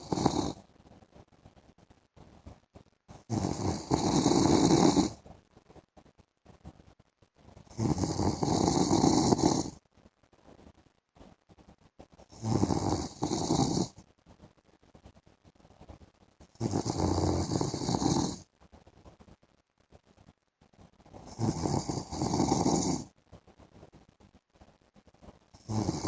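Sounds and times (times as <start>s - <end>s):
man snoring: 0.0s - 0.6s, 3.3s - 5.2s, 7.7s - 9.8s, 12.4s - 13.9s, 16.6s - 18.4s, 21.3s - 23.1s, 25.6s - 26.0s.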